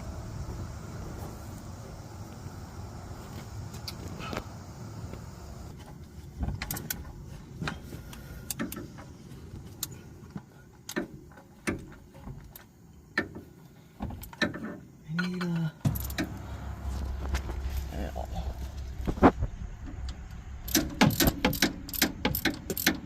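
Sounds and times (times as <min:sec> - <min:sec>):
metallic clicks of hand tools: 0:20.7 - 0:23.0.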